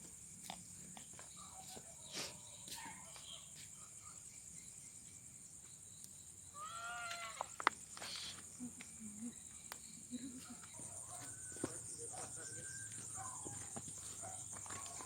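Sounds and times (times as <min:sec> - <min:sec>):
crickets chirring: 0:00.0 - 0:15.0
small clicks and chirps: 0:07.1 - 0:09.0.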